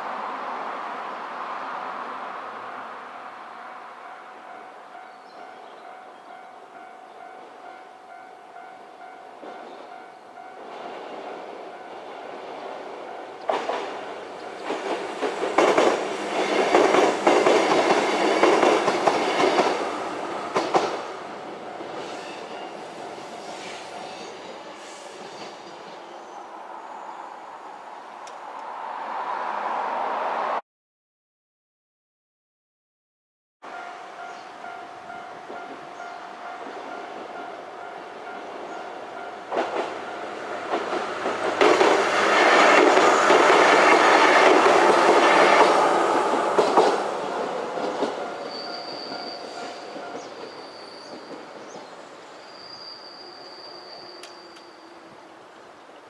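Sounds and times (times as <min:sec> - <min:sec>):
crossing warning bell ringing: 0:03.0 - 0:24.8, 0:33.6 - 0:51.8, 0:52.4 - 0:55.2
train wheels clattering over rails: 0:09.4 - 0:26.0, 0:35.4 - 0:52.0.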